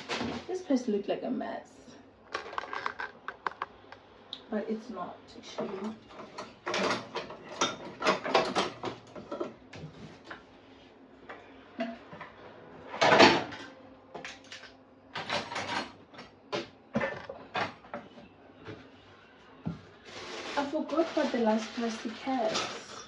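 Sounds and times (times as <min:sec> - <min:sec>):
plastic bag rustling: 0:02.4 - 0:03.4, 0:19.9 - 0:23.0.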